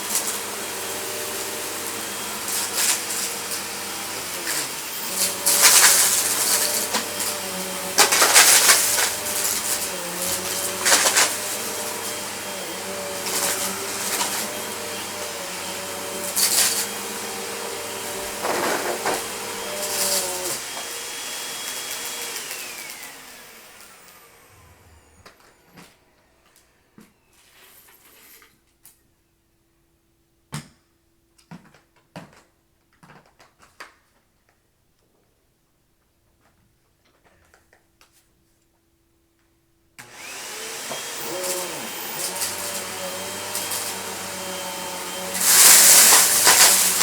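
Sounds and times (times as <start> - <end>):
debris crackling in vacuum: 0.0 - 20.5, 41.2 - 47.0
vacuum cleaner motor whine: 0.0 - 27.9, 40.0 - 47.0.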